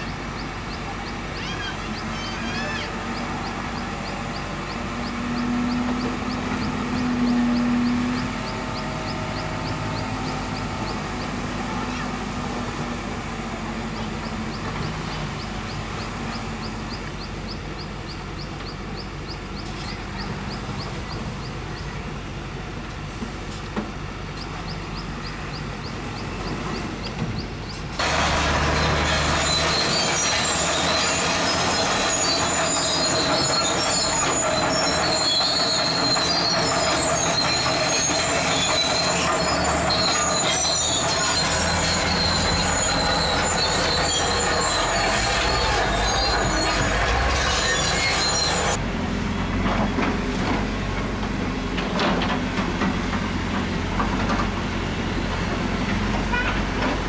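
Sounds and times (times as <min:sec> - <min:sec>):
steel tracks clanking and squealing: 0:00.0 - 0:48.8, 0:49.4 - 0:57.0
bulldozer diesel engine running: 0:00.0 - 0:57.0.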